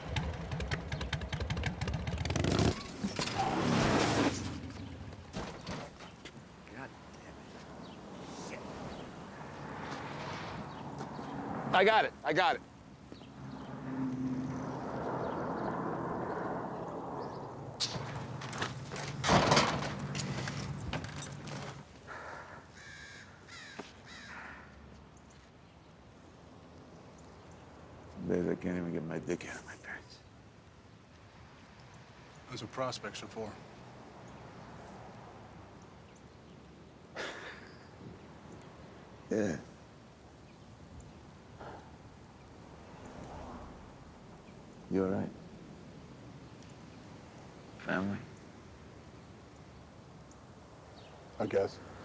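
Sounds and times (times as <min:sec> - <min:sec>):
motorcycle engines throbbing: 0:00.0 - 0:02.8
crow cawing: 0:22.1 - 0:24.9.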